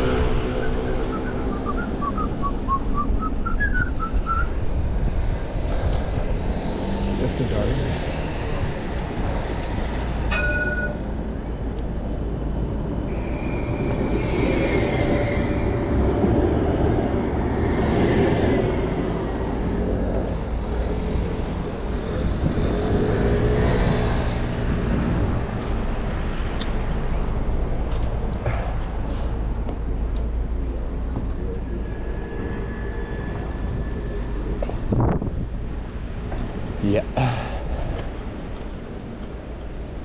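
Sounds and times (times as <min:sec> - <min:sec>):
vehicles passing: 0:00.0 - 0:40.0
wind and road noise: 0:00.0 - 0:40.0
high squeal: 0:13.0 - 0:16.4, 0:31.4 - 0:35.0.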